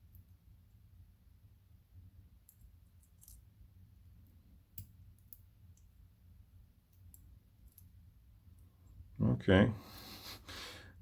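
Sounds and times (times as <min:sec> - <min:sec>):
lock pins and tools clicking: 0:02.5 - 0:03.4.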